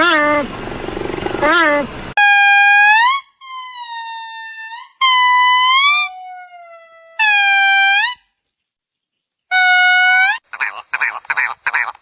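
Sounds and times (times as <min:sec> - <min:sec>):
long pitched animal calls: 0:00.0 - 0:08.2.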